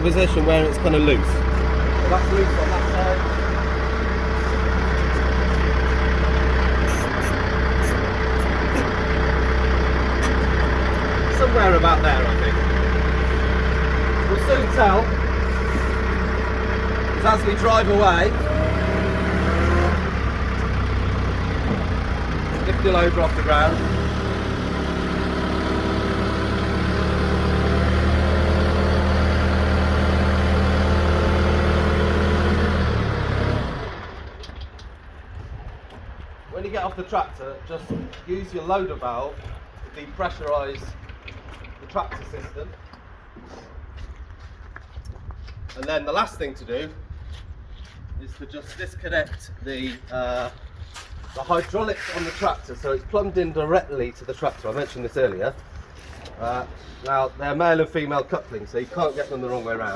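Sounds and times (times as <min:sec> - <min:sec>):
diesel tractor engine idling: 0:00.0 - 0:44.0.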